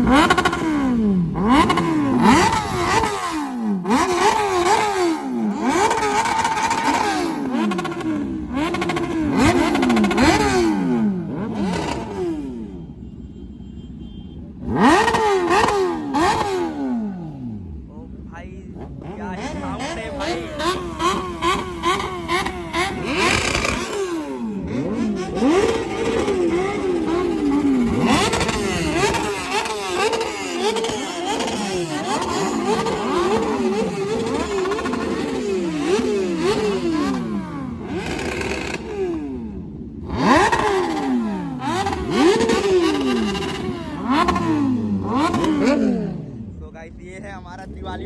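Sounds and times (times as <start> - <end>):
motorcycle engine revving hard: 0.0 - 13.0, 14.5 - 48.0.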